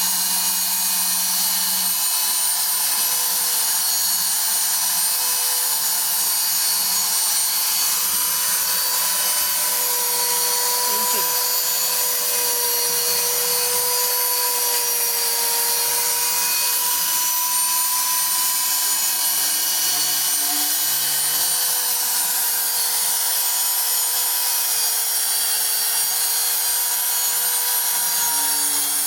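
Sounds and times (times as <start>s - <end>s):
spindle motor whine: 0.0s - 22.2s.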